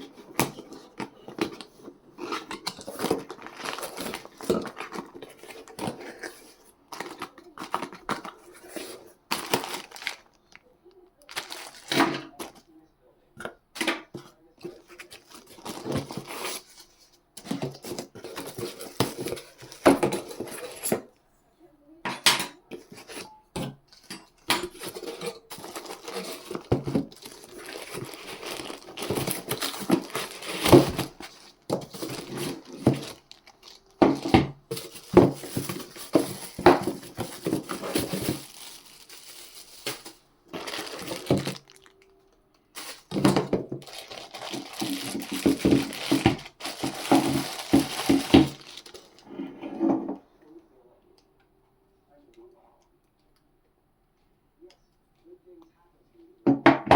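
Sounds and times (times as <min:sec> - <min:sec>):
packaging crinkling: 0:00.2 - 0:12.6, 0:14.7 - 0:20.8, 0:24.6 - 0:49.3
small hard parts clattering: 0:22.1 - 0:42.0, 0:42.8 - 0:49.3.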